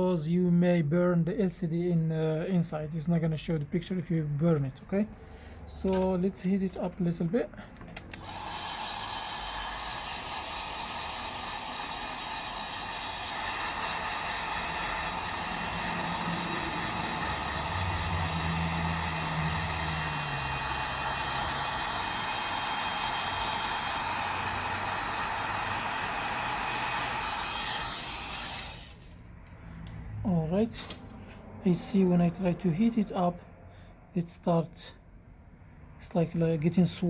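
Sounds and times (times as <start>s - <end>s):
heat gun blowing air: 8.1s - 29.2s.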